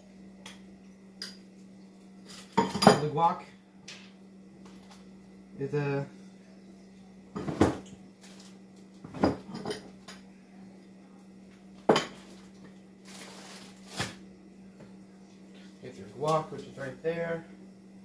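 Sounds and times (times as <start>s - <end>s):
dishes and utensils clinking: 2.3s - 3.1s, 9.2s - 10.2s.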